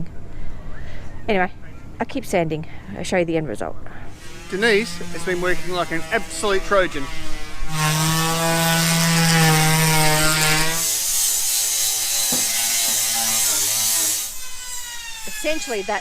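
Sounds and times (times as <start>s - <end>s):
electric power sander on fibreglass: 4.1s - 16.0s.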